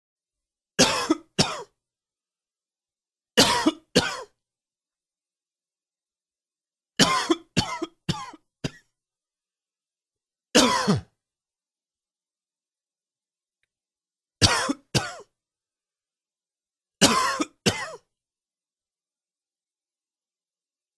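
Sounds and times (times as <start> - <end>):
man coughing: 0.8 - 1.7, 3.4 - 4.4, 7.0 - 8.9, 10.6 - 11.1, 14.4 - 15.3, 17.0 - 18.1.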